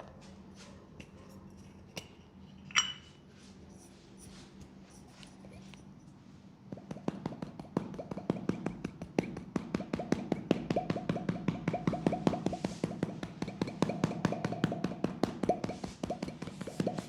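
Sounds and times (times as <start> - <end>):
fast percussive tapping massage: 6.7 - 17.0.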